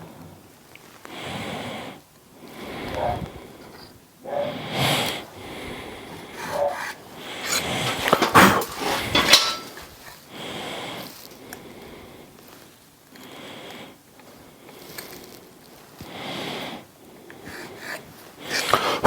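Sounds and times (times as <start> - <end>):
tool scraping steel plate: 6.1 - 10.2, 17.5 - 19.0.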